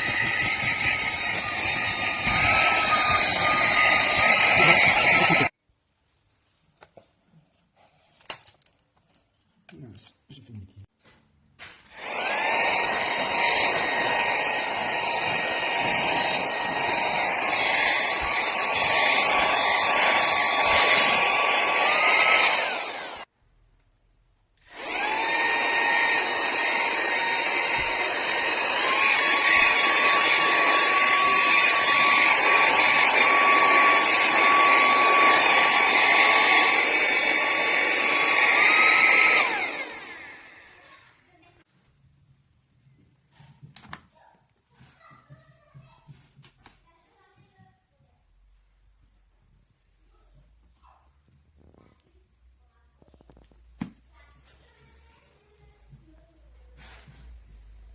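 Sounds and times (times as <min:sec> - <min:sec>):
handheld vacuum cleaner whining: 0:00.0 - 0:05.5, 0:11.8 - 0:23.3, 0:24.6 - 0:41.2.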